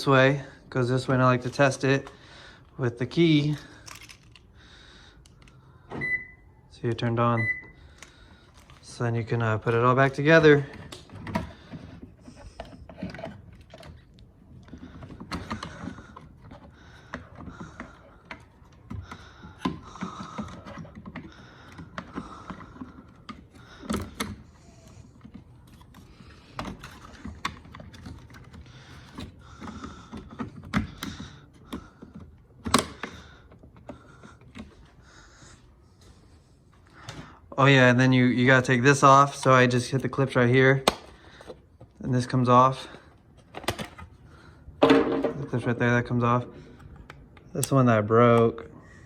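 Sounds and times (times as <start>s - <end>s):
plastic parts clicking and rattling: 3.4s - 4.6s, 9.6s - 35.0s, 42.8s - 46.0s.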